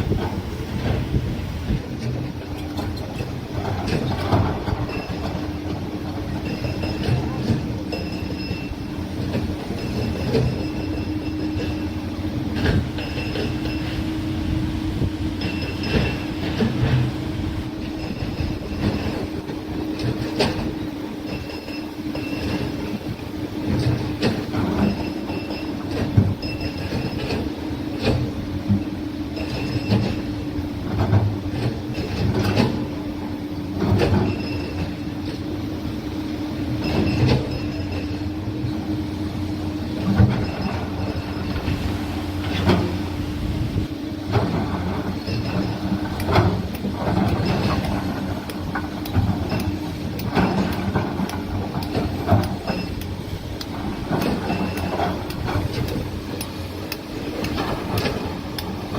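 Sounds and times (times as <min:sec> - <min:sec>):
excavator engine and hydraulic hum: 0:00.0 - 0:58.9
metal clanks and knocks: 0:00.1 - 0:14.1, 0:15.4 - 0:17.2, 0:40.0 - 0:41.8, 0:44.3 - 0:58.9.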